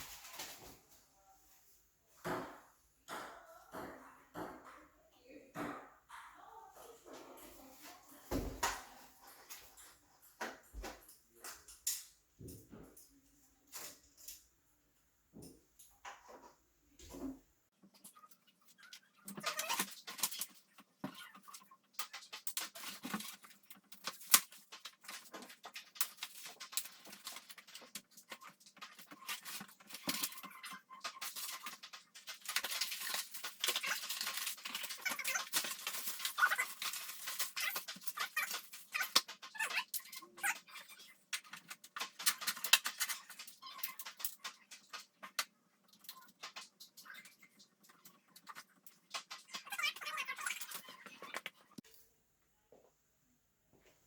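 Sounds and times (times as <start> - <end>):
packaging rustling: 22.2 - 47.4.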